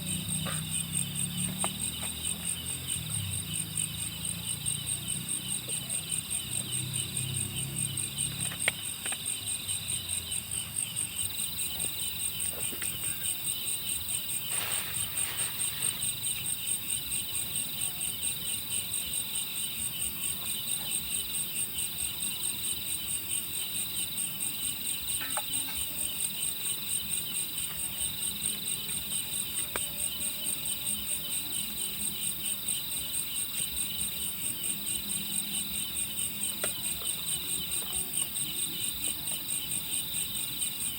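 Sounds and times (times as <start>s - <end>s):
crickets chirping: 0.0s - 40.9s
faint ticks: 0.4s - 2.5s, 8.2s - 9.4s, 28.6s - 30.0s.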